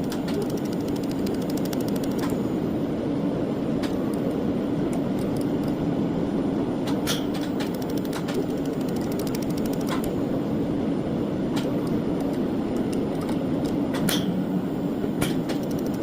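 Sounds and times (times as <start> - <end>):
sharp clicks: 0.0 - 2.4, 6.9 - 10.2, 15.2 - 16.0.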